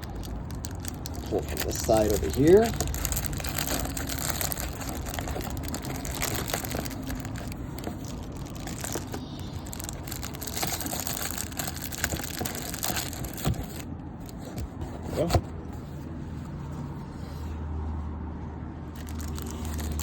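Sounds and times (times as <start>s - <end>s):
plastic wrapper crinkling and tearing: 0.0s - 14.6s, 19.0s - 20.0s.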